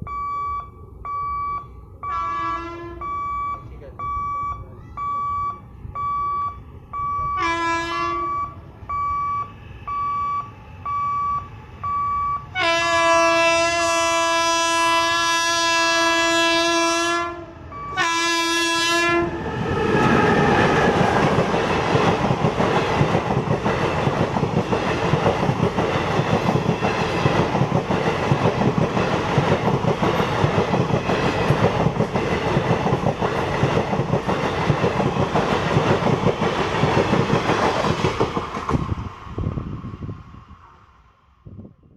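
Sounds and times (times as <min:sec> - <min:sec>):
train horn blasts: 0:02.0 - 0:03.2, 0:07.4 - 0:08.6, 0:12.5 - 0:19.4
train wheels clattering: 0:19.8 - 0:39.1.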